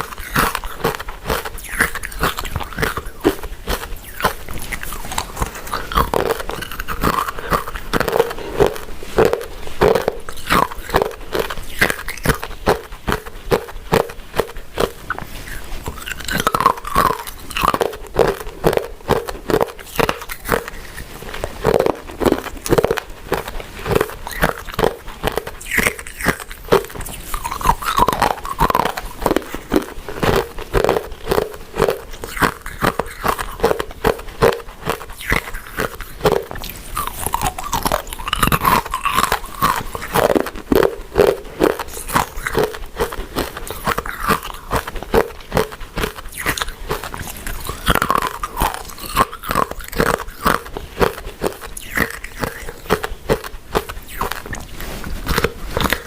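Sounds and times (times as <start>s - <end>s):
person chewing with wet smacks: 0.0s - 56.0s.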